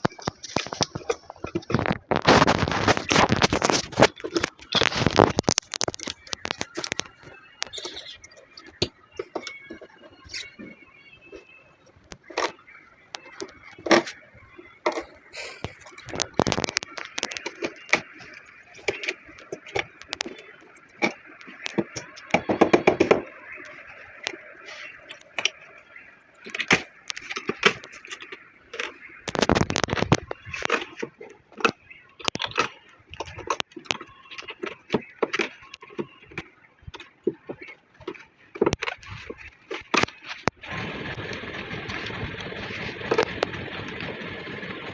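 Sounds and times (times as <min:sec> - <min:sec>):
clicks knocks and scraping on sofa: 0:00.0 - 0:08.1
rapid clatter: 0:00.0 - 0:44.9.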